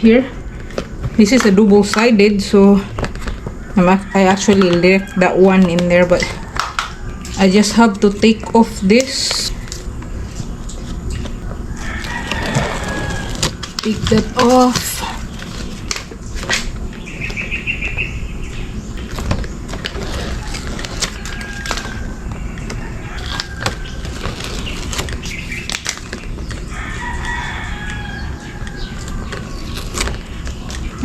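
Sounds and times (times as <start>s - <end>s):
rooster crowing and clucking: 3.5s - 7.8s, 11.0s - 15.9s, 20.0s - 25.5s, 26.4s - 31.0s
tape peeling and crackling: 8.9s - 17.4s, 18.9s - 31.0s.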